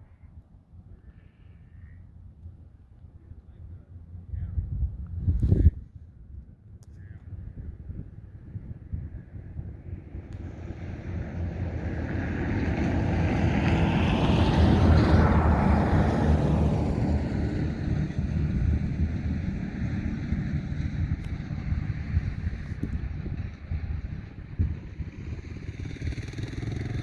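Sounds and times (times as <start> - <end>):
road vehicle passing by: 9.7 - 27.0.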